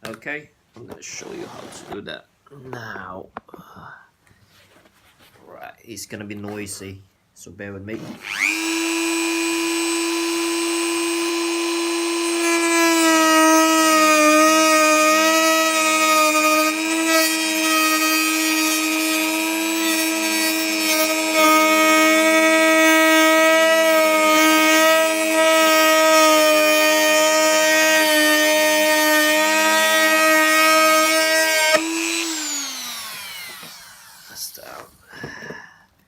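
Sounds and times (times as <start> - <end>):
rotary tool whining: 8.0 - 34.8.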